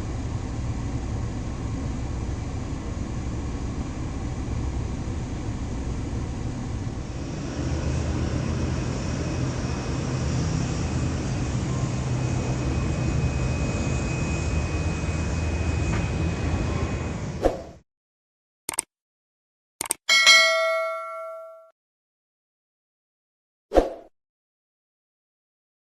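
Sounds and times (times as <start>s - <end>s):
jet engines rumbling: 0.0s - 17.4s
steady high whine: 0.0s - 17.4s.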